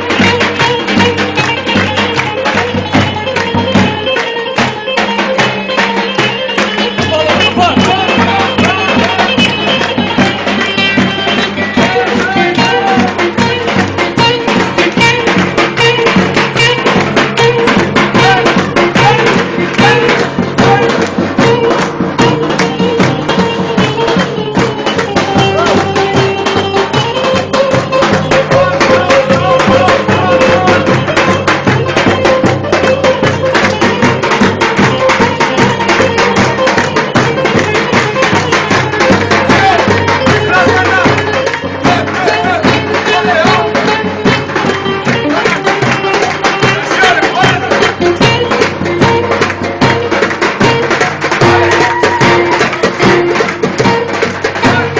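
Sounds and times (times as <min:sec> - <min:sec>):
fast hand percussion: 0:00.0 - 0:54.9
folk dance music: 0:00.0 - 0:54.9.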